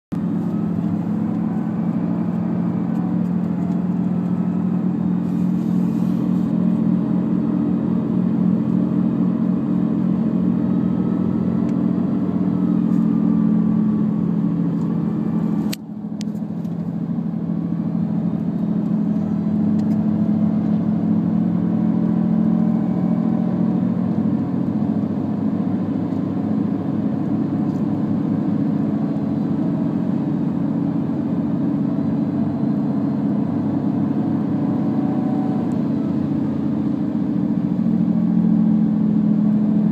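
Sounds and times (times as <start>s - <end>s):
steady low drone: 0.1s - 39.9s
wavering siren-like tone: 0.3s - 7.6s, 21.0s - 24.4s, 32.0s - 39.4s.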